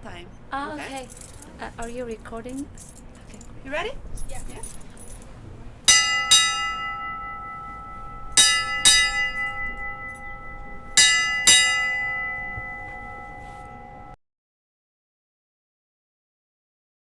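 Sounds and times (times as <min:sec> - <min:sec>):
ship's bell ringing: 0:03.7 - 0:14.2.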